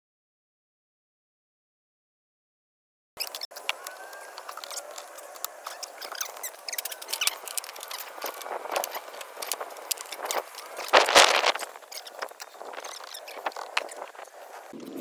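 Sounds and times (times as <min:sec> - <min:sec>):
hands and tools clicking and scraping: 0:03.2 - 0:15.0.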